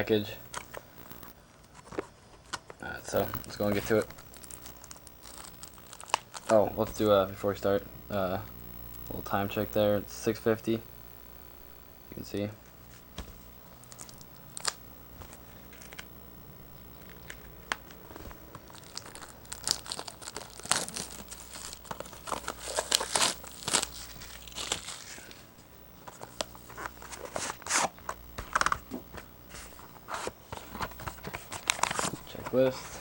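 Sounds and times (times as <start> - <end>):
plastic shrink wrap tearing: 3.0 - 7.3, 13.9 - 16.1, 17.0 - 25.4, 26.0 - 33.0.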